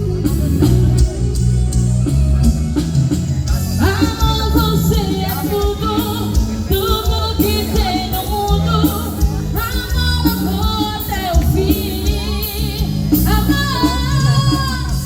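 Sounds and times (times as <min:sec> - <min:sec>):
pop band playing: 0:00.0 - 0:15.0
person singing: 0:03.6 - 0:15.0.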